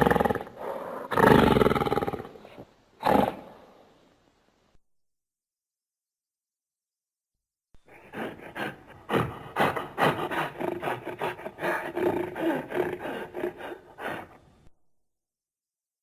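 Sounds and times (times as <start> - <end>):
creature grunting and growling: 8.2 - 14.2.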